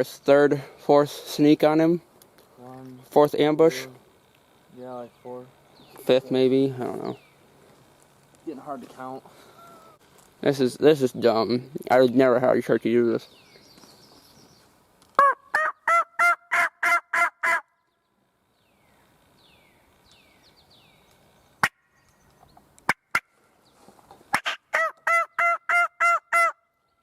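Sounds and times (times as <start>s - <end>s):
turkey call yelps: 15.2s - 17.7s, 24.3s - 26.6s.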